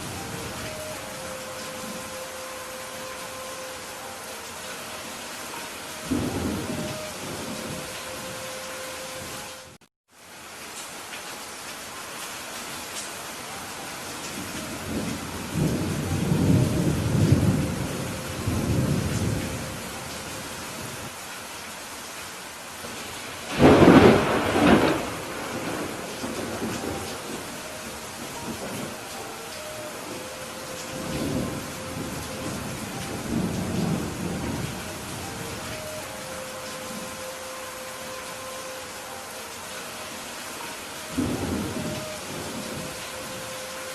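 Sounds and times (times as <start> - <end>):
steady rain: 0.0 - 43.9
thunder rumbling: 6.0 - 8.5, 14.4 - 20.1, 23.5 - 37.3, 41.0 - 43.5.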